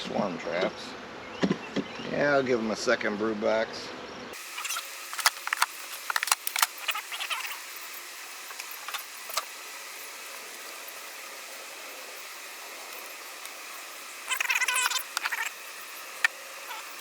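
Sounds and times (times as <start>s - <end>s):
honeybee swarm buzzing: 4.4s - 17.0s.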